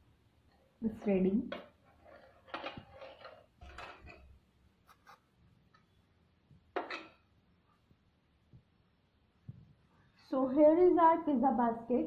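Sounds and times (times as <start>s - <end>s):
kitchenware scraping: 1.5s - 4.4s.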